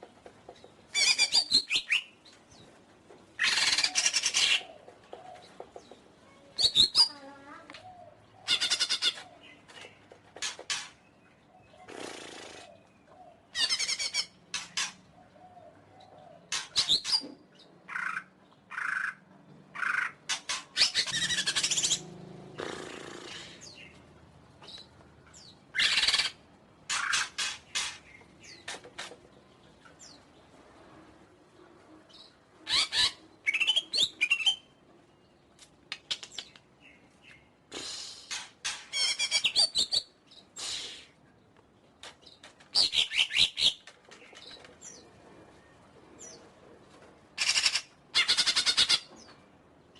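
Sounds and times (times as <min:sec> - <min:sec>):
bird chattering and warbling: 0:03.4 - 0:30.2, 0:35.7 - 0:41.2, 0:47.4 - 0:49.4.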